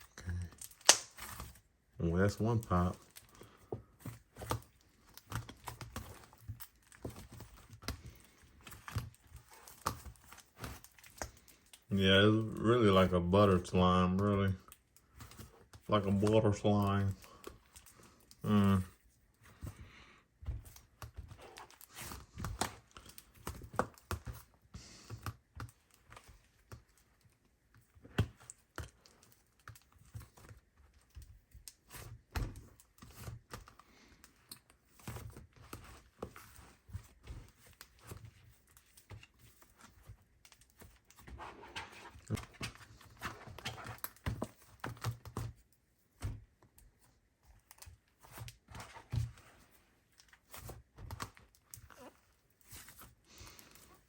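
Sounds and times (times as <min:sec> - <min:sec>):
slime squishing and popping: 0:00.5 - 0:01.6.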